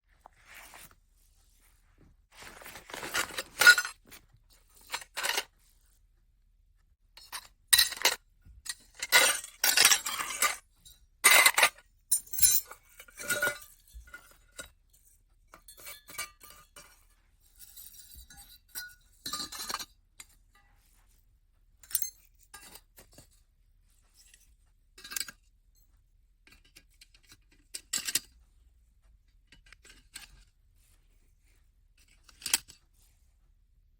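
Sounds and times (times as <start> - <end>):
metal stove parts clinking: 11.2 - 14.2.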